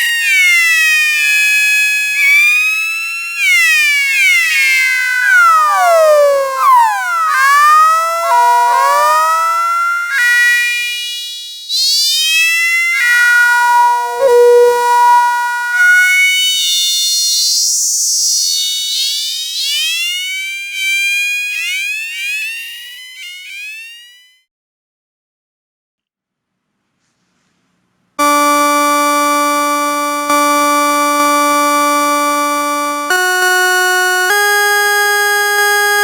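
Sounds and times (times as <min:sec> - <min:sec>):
synthesizer imitating cat meows: 0:04.6 - 0:10.5.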